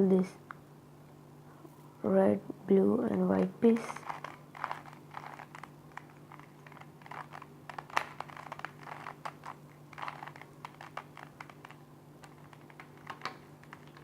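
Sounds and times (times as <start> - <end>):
faint steady hum: 0.0 - 14.0
plastic cube clicking as turned: 4.0 - 14.0.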